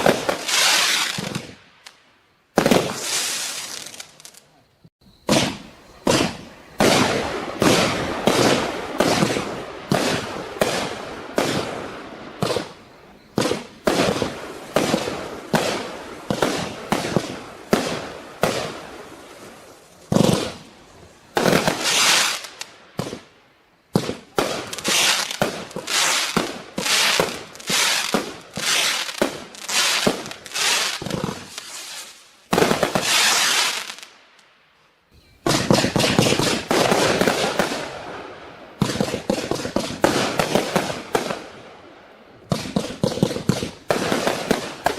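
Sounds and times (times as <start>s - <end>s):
firework hissing bursts: 0.0s - 2.0s, 2.6s - 4.4s, 13.4s - 23.3s, 24.1s - 34.2s
firework bangs: 0.0s - 4.4s, 5.2s - 34.2s, 35.4s - 44.9s.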